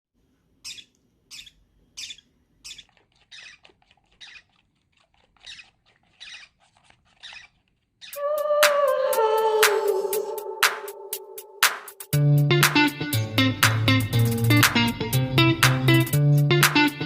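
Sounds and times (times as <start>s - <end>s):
parrot chick begging calls: 0.6s - 4.5s, 5.4s - 6.6s, 7.2s - 9.1s.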